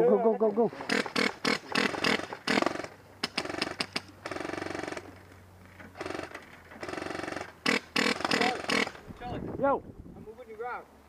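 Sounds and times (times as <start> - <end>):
airsoft guns firing full auto: 0.9 - 5.1, 6.0 - 9.0.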